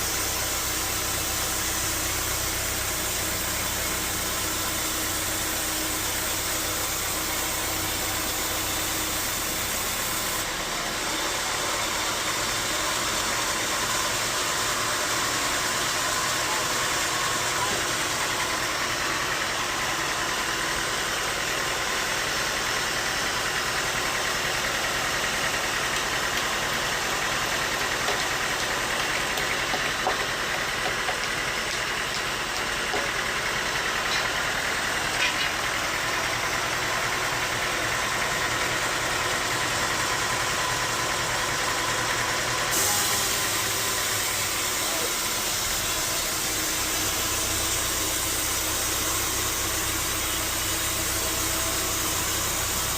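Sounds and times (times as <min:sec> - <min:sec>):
bandsaw sawmill running: 0:00.0 - 0:52.9.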